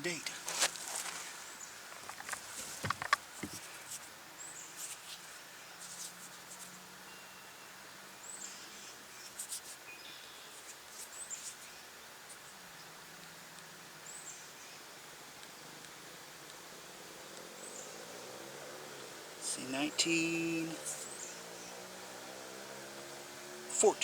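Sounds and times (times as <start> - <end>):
scratchy rubbing: 0.5 - 4.0
bird chirping: 1.0 - 4.8, 19.1 - 22.0.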